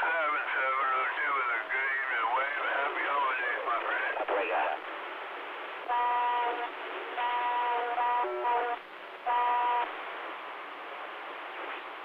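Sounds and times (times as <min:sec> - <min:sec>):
buzzy radio transmission tones: 0:00.0 - 0:06.7
radio static hiss: 0:00.0 - 0:12.0.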